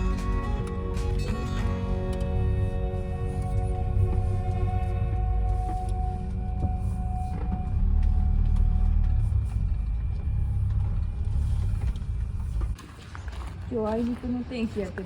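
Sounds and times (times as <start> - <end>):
background music: 0.0 - 11.8
diesel van driving: 0.0 - 15.0.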